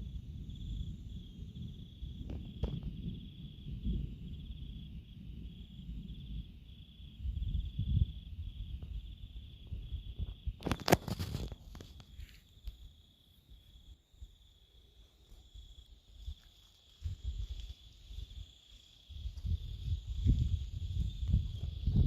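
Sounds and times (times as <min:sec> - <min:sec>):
crickets chirping: 0:00.0 - 0:22.0
loud crackle: 0:10.6 - 0:12.2.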